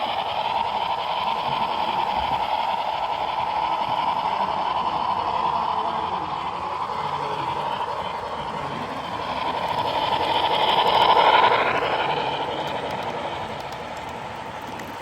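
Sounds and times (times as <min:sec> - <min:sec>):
model train running past: 0:00.0 - 0:15.0.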